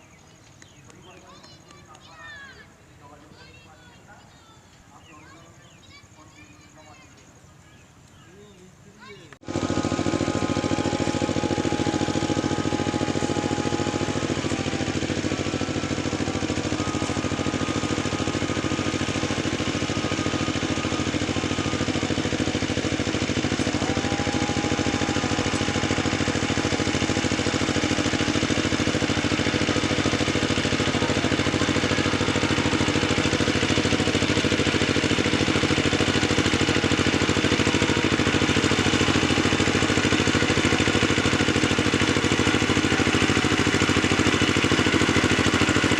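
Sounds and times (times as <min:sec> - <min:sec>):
engine running steadily: 0:09.4 - 0:45.9.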